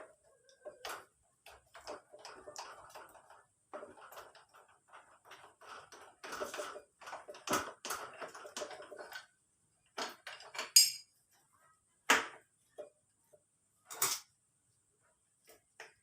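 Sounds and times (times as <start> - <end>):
metal parts and tools clinking: 10.0 - 11.1, 13.9 - 14.3.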